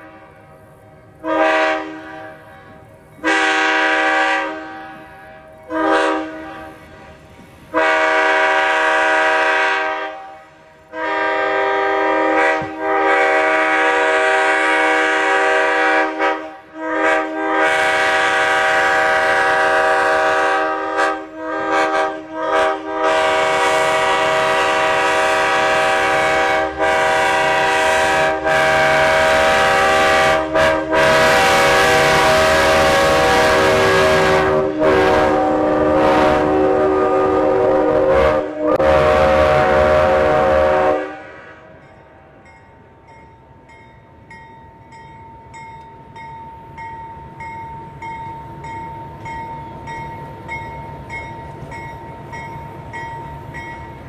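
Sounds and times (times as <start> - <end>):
train air horn: 0.0 - 0.6, 1.2 - 42.4.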